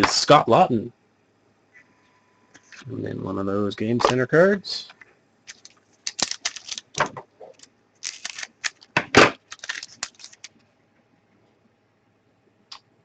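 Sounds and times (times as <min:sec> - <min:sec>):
cards clicking and swishing: 0:05.5 - 0:10.6.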